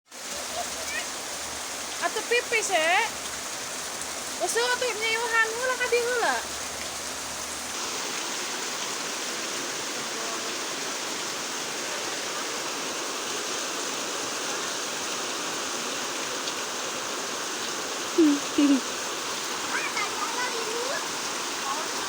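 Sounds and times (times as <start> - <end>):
heavy rain falling: 0.1 - 22.0
loud vocal calls: 18.2 - 21.9.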